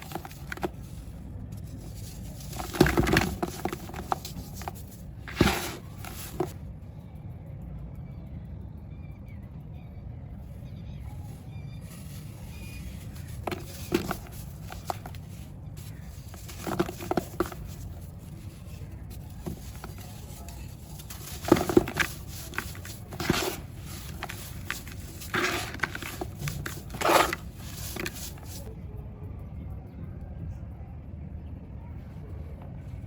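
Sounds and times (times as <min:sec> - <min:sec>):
dry clumps crunching and crackling: 0:00.0 - 0:06.6, 0:11.2 - 0:28.7.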